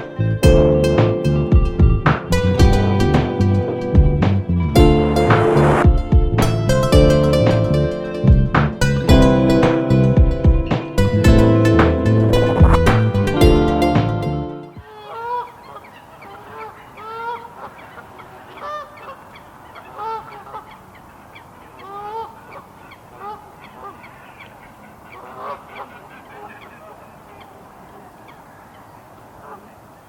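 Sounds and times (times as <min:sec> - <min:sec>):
music: 0:00.0 - 0:14.8
geese honking: 0:14.7 - 0:29.9.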